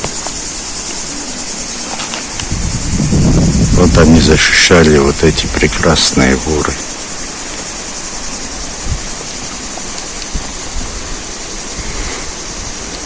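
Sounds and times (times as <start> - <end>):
river rushing: 3.8 - 13.0.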